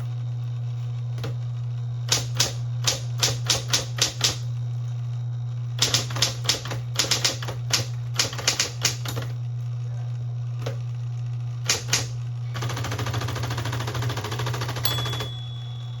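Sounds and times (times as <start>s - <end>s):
typewriter motor hum: 0.0s - 16.0s
rapid rattle of typewriter clicks: 2.1s - 4.4s, 5.8s - 9.3s, 11.6s - 15.3s
typewriter keys striking: 2.1s - 4.4s, 5.8s - 9.3s, 11.6s - 12.2s.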